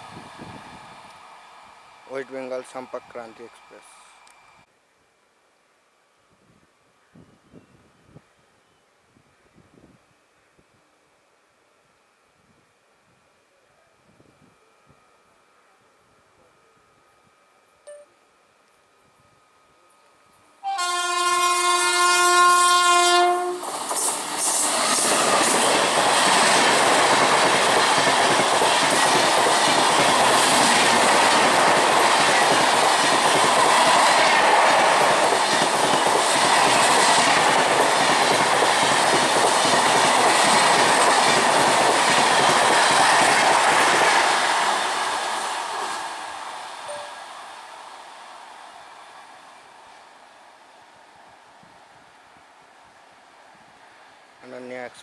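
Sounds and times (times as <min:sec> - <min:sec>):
train horn blast: 0:20.6 - 0:23.7
train rushing and wheels clattering: 0:23.2 - 0:51.4.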